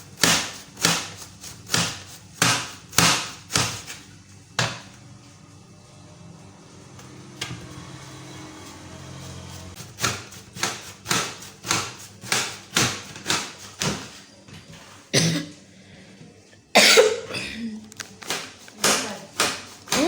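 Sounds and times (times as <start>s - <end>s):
knife chopping on cutting board: 0.2s - 4.0s, 9.8s - 14.1s, 18.2s - 20.0s.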